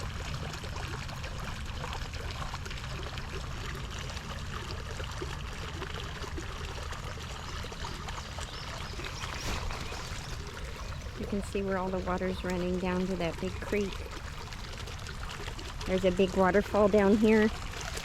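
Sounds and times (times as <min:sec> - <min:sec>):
floodwater rushing across ground: 0:00.0 - 0:18.0.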